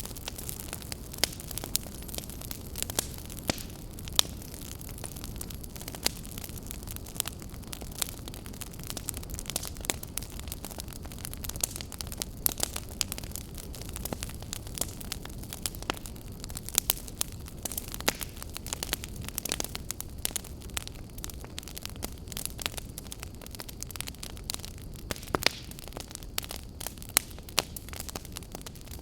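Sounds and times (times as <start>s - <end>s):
campfire pops and snaps: 0.0s - 29.0s
low rumble of burning fire: 0.0s - 29.0s.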